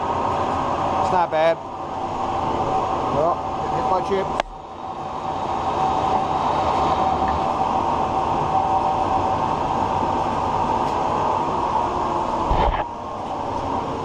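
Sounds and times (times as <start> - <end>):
lathe running under load: 0.0 - 14.0.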